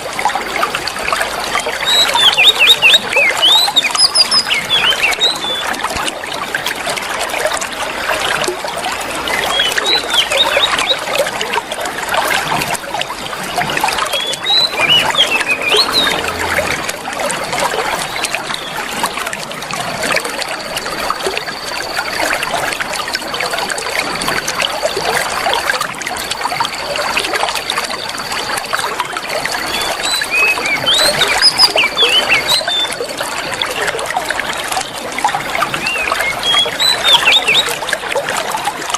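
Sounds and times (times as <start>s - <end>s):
water trickling: 0.0s - 38.9s
bird chirps: 13.9s - 17.1s, 29.6s - 33.1s, 35.8s - 37.8s
thin high whistle: 14.2s - 17.0s.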